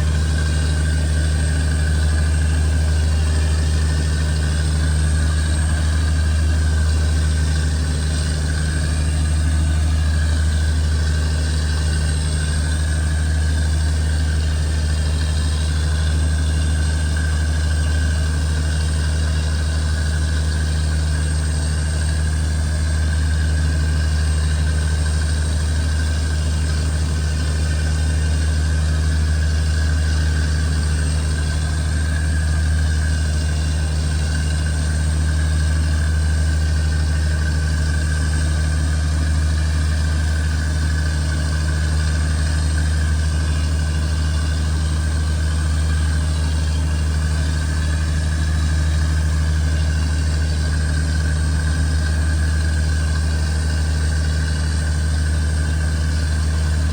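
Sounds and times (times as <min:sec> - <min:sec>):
boat engine humming: 0:00.0 - 0:56.9.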